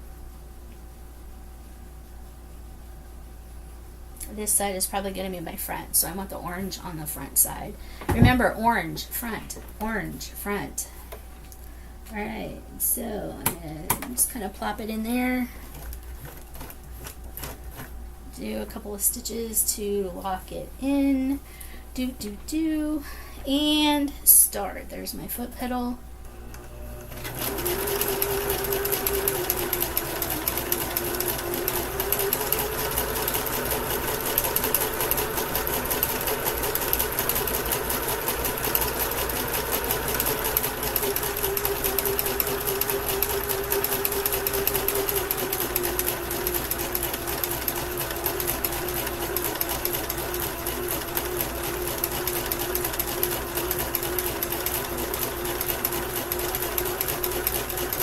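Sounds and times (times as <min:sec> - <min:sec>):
sewing machine running: 0:26.4 - 0:58.0.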